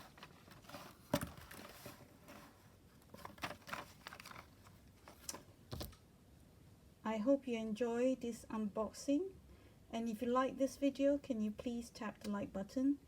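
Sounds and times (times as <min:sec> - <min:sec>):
paper packaging rustling: 0:00.0 - 0:06.0.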